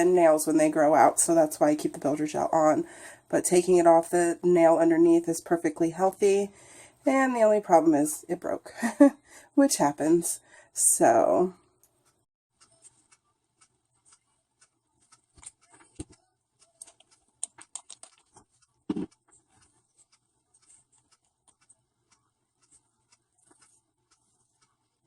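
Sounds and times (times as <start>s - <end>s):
small objects clicking and tapping: 15.1s - 19.6s.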